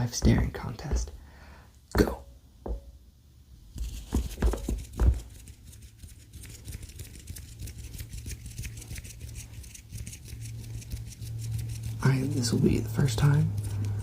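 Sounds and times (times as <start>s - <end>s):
light crackly tapping and rubbing: 3.8s - 12.7s.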